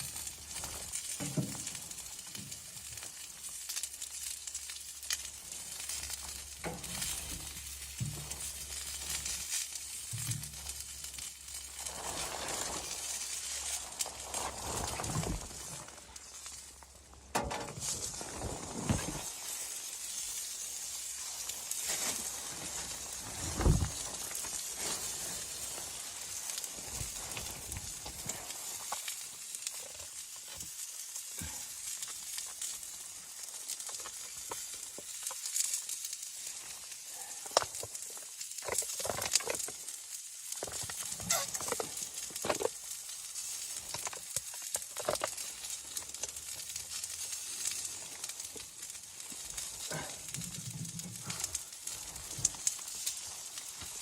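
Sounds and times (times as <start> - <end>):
sharp crackles and clicks: 0.0 - 54.0
sizzling hiss: 0.0 - 54.0.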